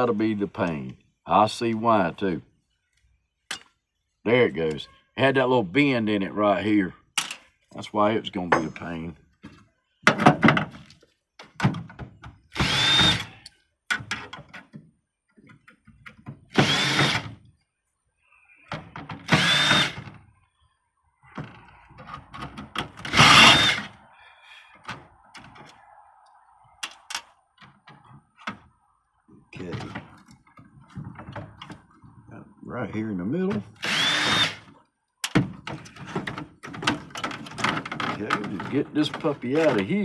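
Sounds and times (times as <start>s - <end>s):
power drill whine: 12.5s - 13.3s, 16.5s - 17.3s, 19.3s - 20.0s, 23.1s - 24.0s, 33.8s - 34.7s
handling clicks and knocks: 35.2s - 40.0s.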